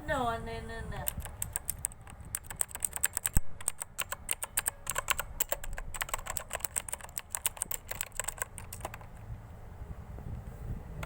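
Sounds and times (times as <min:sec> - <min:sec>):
mechanical keyboard key clicks: 0:01.0 - 0:09.3.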